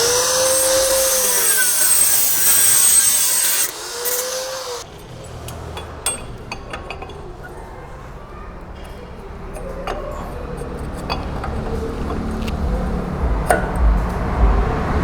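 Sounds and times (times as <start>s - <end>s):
low vehicle rumble: 10.3s - 15.0s.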